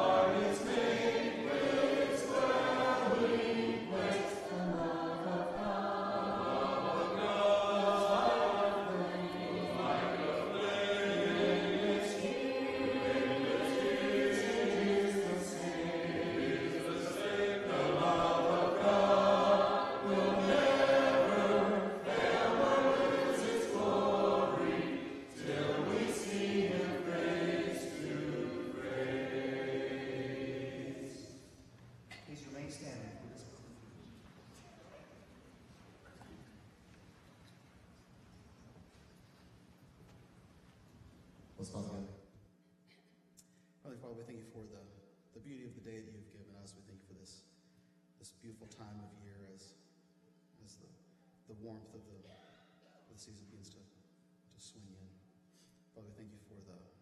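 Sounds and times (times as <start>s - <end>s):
congregation singing a hymn: 0.0s - 31.7s.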